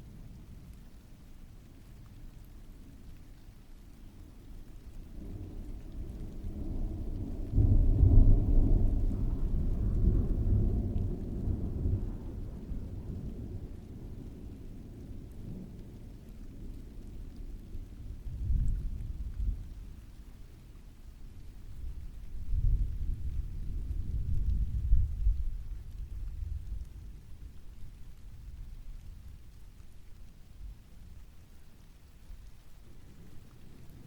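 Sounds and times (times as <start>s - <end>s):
steady rain: 0.0s - 34.0s
rolling thunder: 5.1s - 16.9s, 17.6s - 20.0s, 21.7s - 29.6s.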